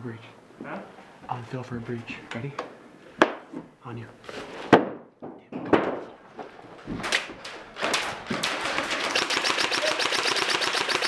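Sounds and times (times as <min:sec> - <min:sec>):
airsoft rifle automatic fire: 0:07.8 - 0:11.0.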